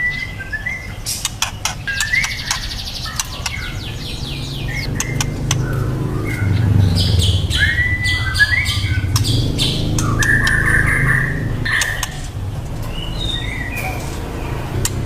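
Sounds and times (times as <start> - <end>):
bird whistling and chirping: 0.0 - 14.2
sharp clicks: 1.2 - 3.8, 4.7 - 6.4, 9.1 - 10.6, 11.7 - 13.0.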